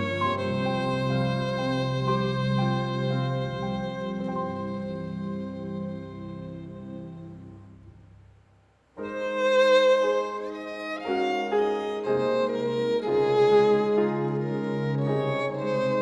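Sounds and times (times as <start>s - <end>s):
violin playing slow notes: 0.0s - 8.0s, 9.0s - 16.0s
lower accompaniment: 0.0s - 8.4s.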